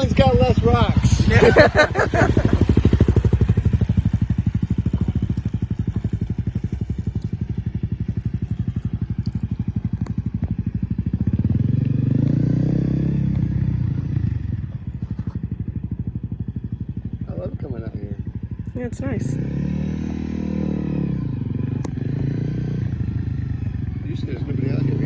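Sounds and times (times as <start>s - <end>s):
dirt bike engine chugging: 0.0s - 25.0s.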